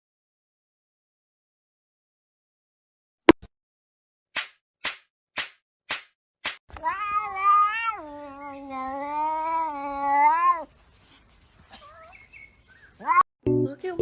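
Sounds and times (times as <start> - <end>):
sharp slaps or taps: 4.4 - 6.6
cat yowling: 6.8 - 10.7, 11.7 - 12.2, 13.0 - 13.2.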